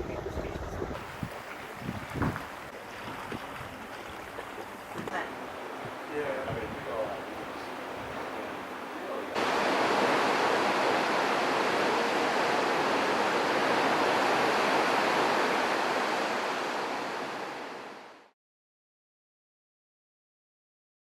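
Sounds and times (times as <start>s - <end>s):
steady rushing noise: 5.4s - 18.3s.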